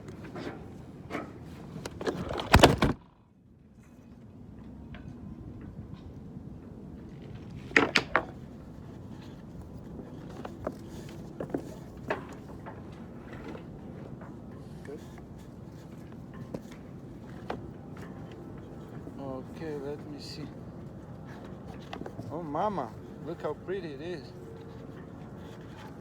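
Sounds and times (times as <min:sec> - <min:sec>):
gear thunking on boat deck: 0:00.1 - 0:03.2.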